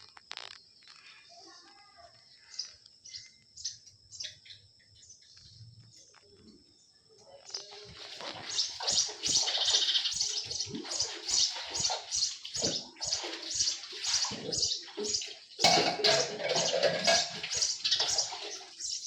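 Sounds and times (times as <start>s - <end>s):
water splashing: 7.6s - 19.0s.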